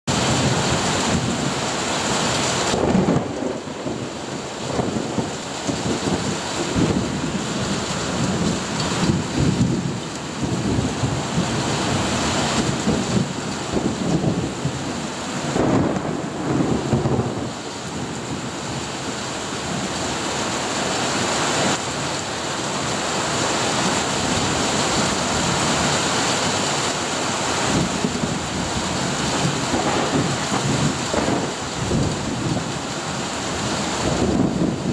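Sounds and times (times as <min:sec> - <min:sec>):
thunder rumbling: 0:00.1 - 0:20.0, 0:27.5 - 0:34.9
steady rain falling: 0:00.1 - 0:34.9.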